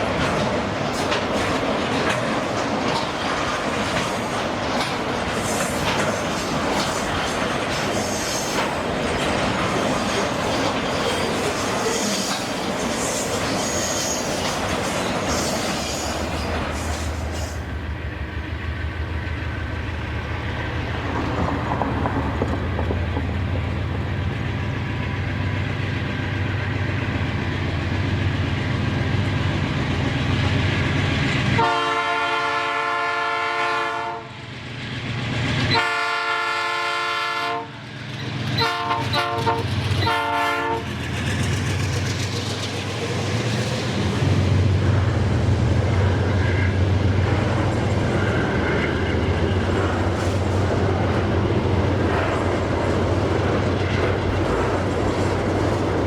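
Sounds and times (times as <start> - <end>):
diesel locomotive engine drone: 0.0 - 56.0
train wheel rumble: 0.0 - 56.0
locomotive air horn blasts: 31.6 - 34.3, 35.7 - 37.8, 38.6 - 40.8.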